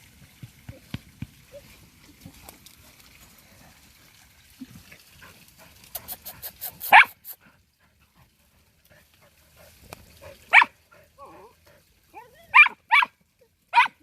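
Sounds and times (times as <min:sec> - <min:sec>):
dogs digging at dirt: 0:00.4 - 0:12.7
dog barking: 0:06.9 - 0:07.2, 0:10.4 - 0:10.7, 0:12.5 - 0:13.1, 0:13.7 - 0:14.0.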